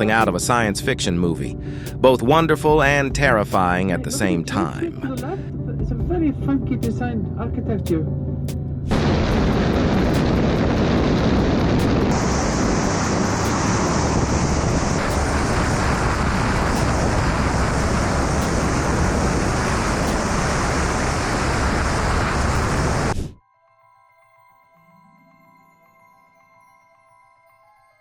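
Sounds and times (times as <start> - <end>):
high hiss: 8.9 - 23.4
loud steady rushing noise: 8.9 - 23.4.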